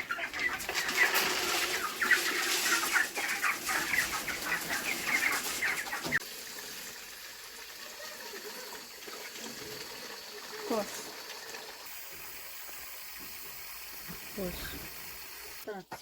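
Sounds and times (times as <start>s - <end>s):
chickens cheeping and clucking: 0.0s - 6.2s.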